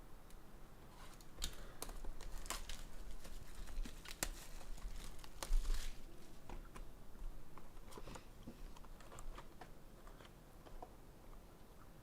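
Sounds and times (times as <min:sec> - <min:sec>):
plastic wrapping crinkling and tearing: 0:01.0 - 0:06.8.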